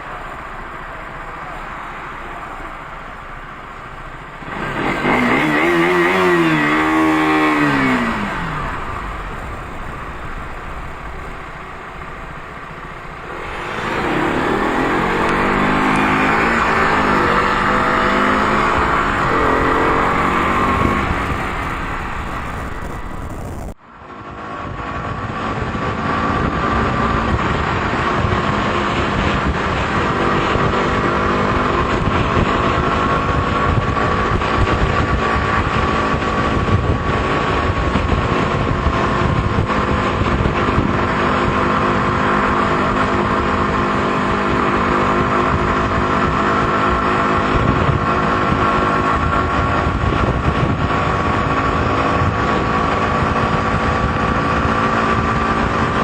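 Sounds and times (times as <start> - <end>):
motorcycle engine running: 4.4 - 23.8, 24.5 - 56.0
wind rushing over microphone: 4.4 - 56.0.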